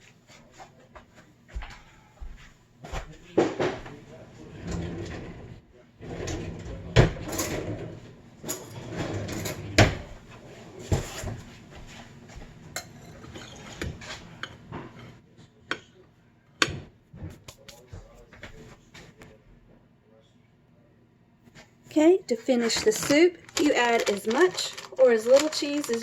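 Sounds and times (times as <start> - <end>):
dishes and utensils clinking: 12.7 - 15.1.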